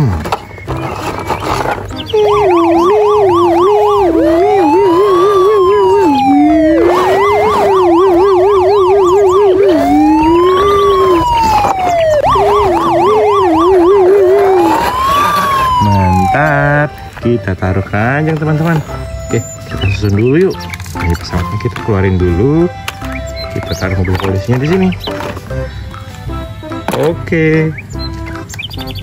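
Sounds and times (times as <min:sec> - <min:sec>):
lower warbling tone: 0:02.1 - 0:16.5
toy police siren: 0:02.1 - 0:17.9, 0:18.8 - 0:24.8.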